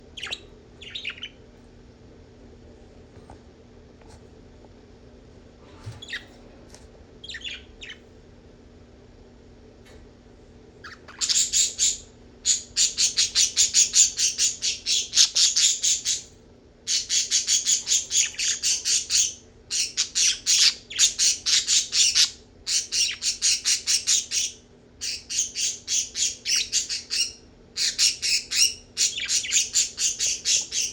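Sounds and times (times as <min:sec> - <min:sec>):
parakeet chirping: 0:00.1 - 0:01.4, 0:06.0 - 0:06.3, 0:07.2 - 0:08.1, 0:10.8 - 0:16.3, 0:16.9 - 0:30.9.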